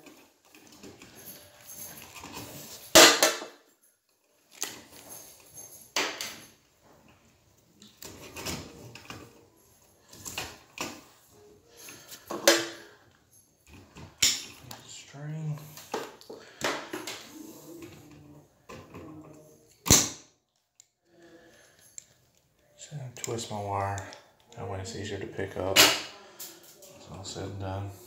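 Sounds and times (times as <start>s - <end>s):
tools clicking and knocking: 12.0s - 12.9s.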